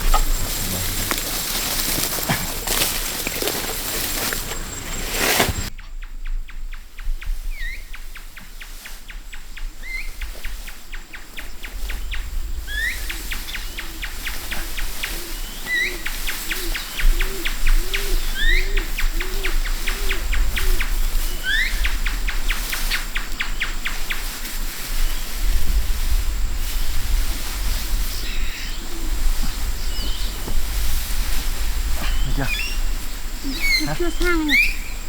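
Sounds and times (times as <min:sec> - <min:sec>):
low bird hooting: 0:12.7 - 0:21.9, 0:31.9 - 0:35.0
bird rising chirp: 0:33.4 - 0:35.0.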